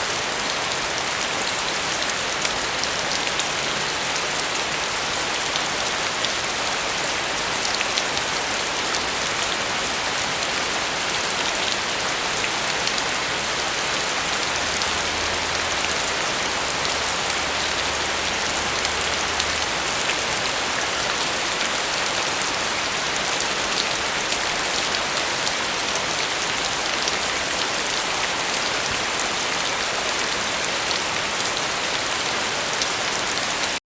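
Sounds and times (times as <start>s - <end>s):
steady rain: 0.0s - 33.8s.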